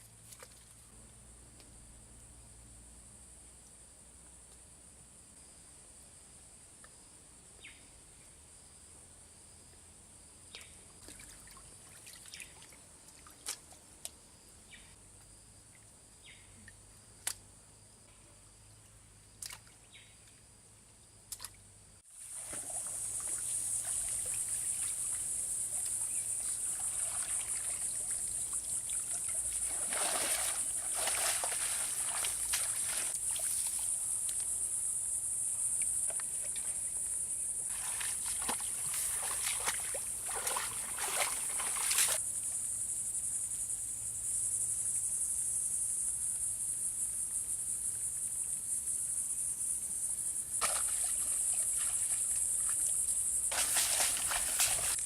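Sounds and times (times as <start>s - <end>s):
water trickling and splashing: 10.9s - 13.8s, 22.2s - 34.5s, 37.6s - 42.2s, 50.6s - 55.0s
small clicks and drips: 19.4s - 20.4s, 21.3s - 21.6s.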